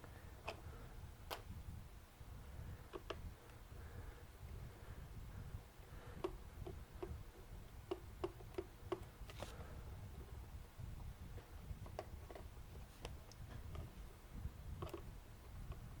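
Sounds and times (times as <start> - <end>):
screwdriver ticking: 7.8 - 9.1.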